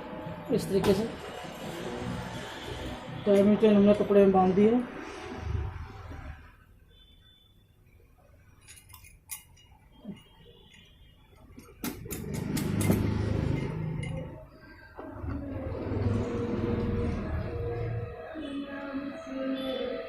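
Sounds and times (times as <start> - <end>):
metal parts clinking: 8.6 - 10.9.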